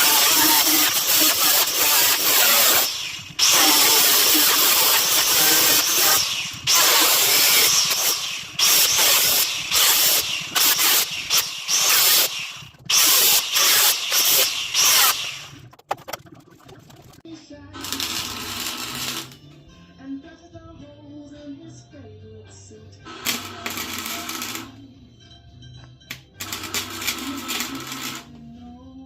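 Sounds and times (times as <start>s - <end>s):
power tool grinding sheet steel: 0.0s - 15.6s, 26.4s - 28.3s.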